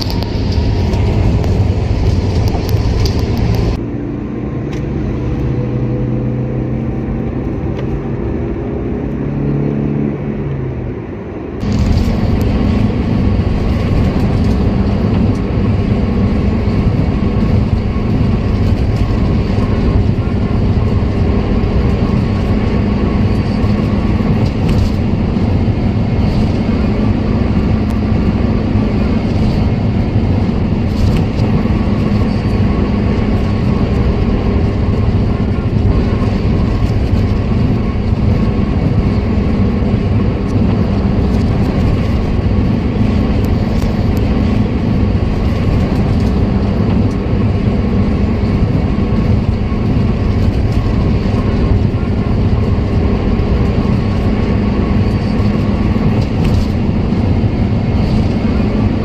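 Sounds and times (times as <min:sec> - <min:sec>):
vehicle engine and road rumble: 0:00.0 - 0:59.0.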